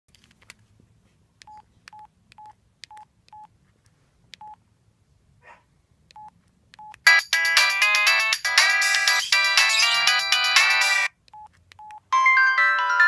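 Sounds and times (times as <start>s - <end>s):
phone button clicks and beeps: 6.1s - 7.0s, 11.3s - 12.0s.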